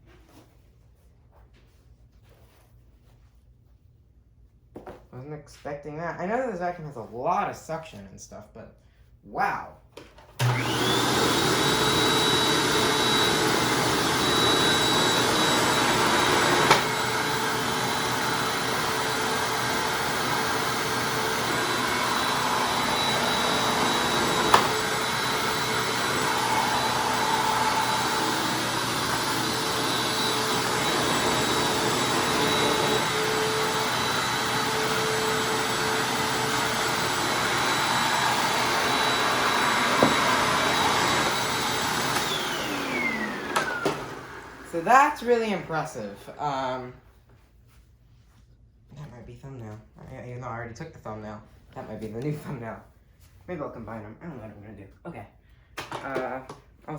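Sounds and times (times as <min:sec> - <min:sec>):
vacuum cleaner motor whine: 0:10.4 - 0:46.6.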